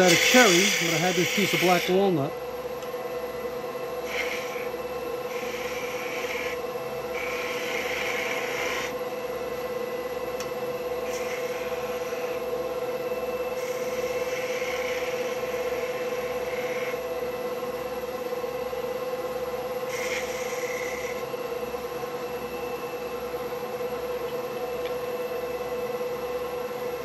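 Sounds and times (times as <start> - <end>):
turning tool cutting hiss: 0.0 - 2.3, 4.0 - 9.0, 11.0 - 12.4, 13.5 - 17.0, 19.8 - 21.3
wood lathe humming: 0.0 - 24.0.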